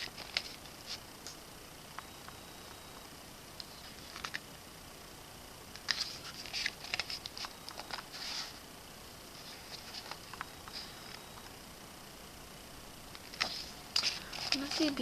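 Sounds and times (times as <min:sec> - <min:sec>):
book pages turning: 0:00.0 - 0:01.0, 0:03.8 - 0:04.4, 0:05.8 - 0:08.6, 0:09.4 - 0:11.5, 0:13.2 - 0:15.0.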